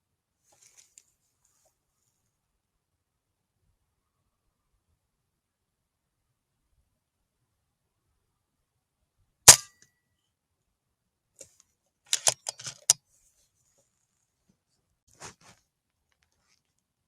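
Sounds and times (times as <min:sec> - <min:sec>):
rifle action metallic clicks: 0:09.5 - 0:09.7, 0:12.1 - 0:13.0.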